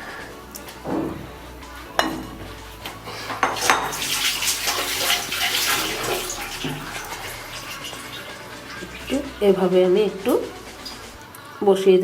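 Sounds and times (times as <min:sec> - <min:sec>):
wet scraping and pouring: 0:02.9 - 0:09.4
utensil clinking on dish: 0:03.2 - 0:09.2.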